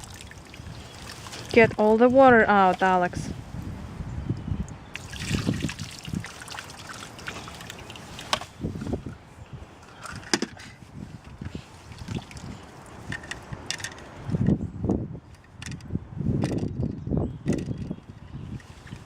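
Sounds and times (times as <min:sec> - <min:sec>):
water sloshing and trickling: 0:00.0 - 0:03.1, 0:04.7 - 0:14.4, 0:18.4 - 0:19.0.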